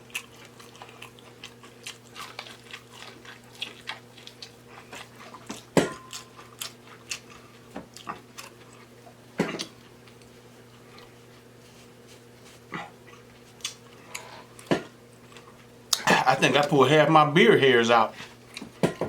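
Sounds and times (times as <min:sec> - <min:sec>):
chewing and lip-smacking: 0:00.0 - 0:11.2, 0:12.5 - 0:16.2.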